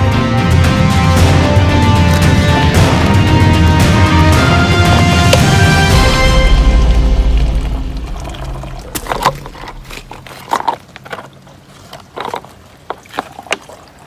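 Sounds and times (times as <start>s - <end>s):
background music: 0.0s - 10.2s
rain falling: 2.1s - 10.4s.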